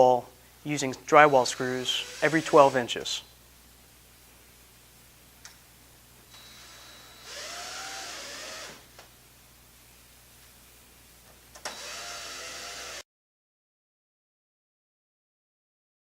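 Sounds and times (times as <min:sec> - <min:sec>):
power drill driving screws: 0:01.3 - 0:02.8, 0:06.3 - 0:08.9, 0:11.6 - 0:13.0.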